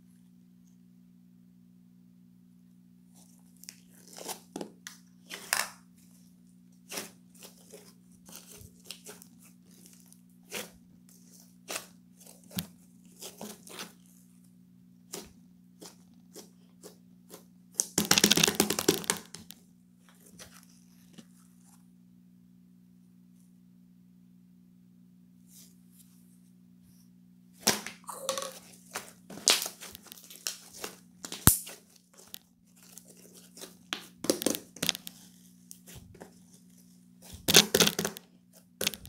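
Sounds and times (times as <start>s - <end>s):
rustling and crinkling handling: 3.1s - 21.9s, 27.6s - 39.0s
tearing sound: 27.7s - 36.2s.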